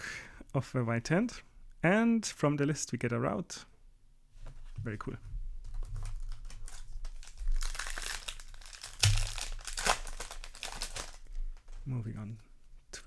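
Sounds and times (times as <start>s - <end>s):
foil wrapper crinkling and tearing: 5.6s - 11.3s.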